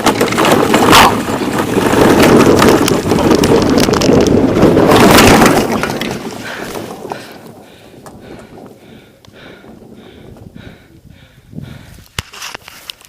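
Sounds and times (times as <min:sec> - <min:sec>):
plastic toy car rattling over ground: 0:00.0 - 0:08.7
wind buffeting microphone: 0:00.0 - 0:12.2.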